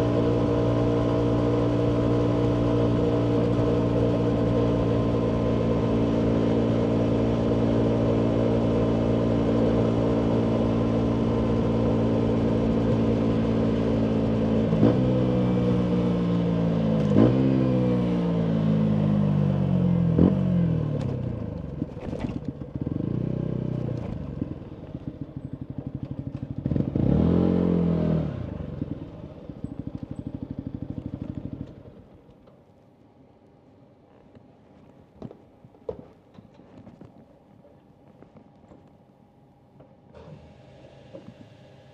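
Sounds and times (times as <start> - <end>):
motorcycle engine revving and idling: 0.0 - 32.4.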